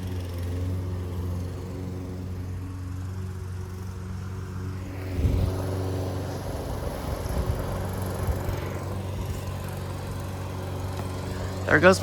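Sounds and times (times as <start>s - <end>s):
lawnmower engine humming: 0.0s - 12.0s
wind through tree foliage: 0.0s - 12.0s
wind buffeting microphone: 4.9s - 9.6s.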